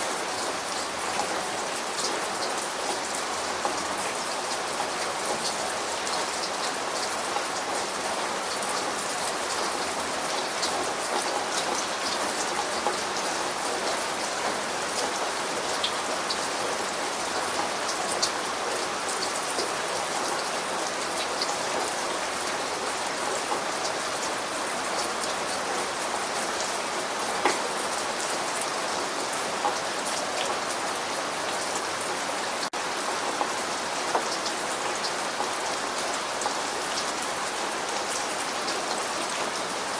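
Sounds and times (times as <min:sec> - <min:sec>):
raindrops ticking on a surface: 0:00.0 - 0:39.9
steady rain hiss: 0:00.0 - 0:39.9.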